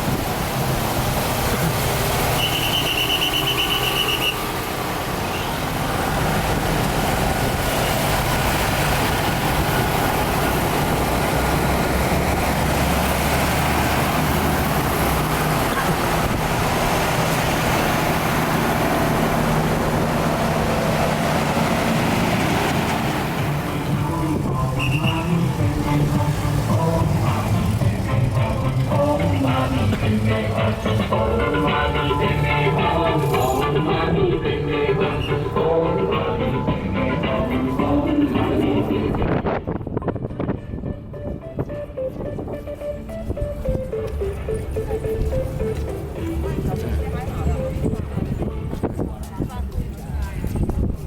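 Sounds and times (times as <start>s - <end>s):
vehicle engine running: 0.0s - 39.2s
traffic rumble: 0.0s - 51.0s.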